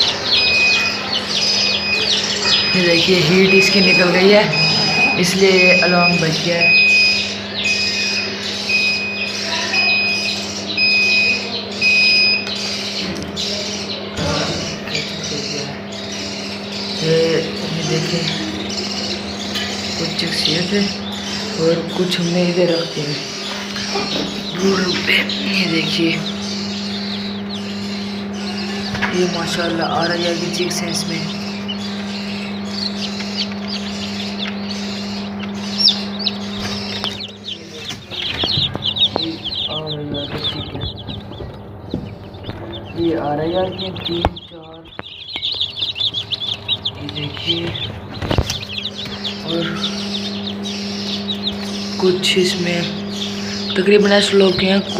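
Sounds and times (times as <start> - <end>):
chicks peeping: 0.0 - 54.9
steady low hum: 0.0 - 54.9
alarm beeping in two-tone pips: 1.6 - 12.5.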